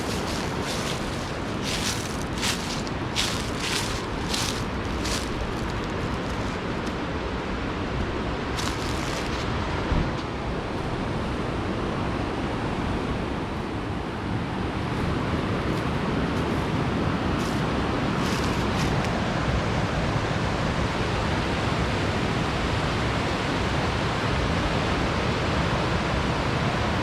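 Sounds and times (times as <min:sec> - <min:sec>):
creek waterfall rushing: 0:00.0 - 0:09.8.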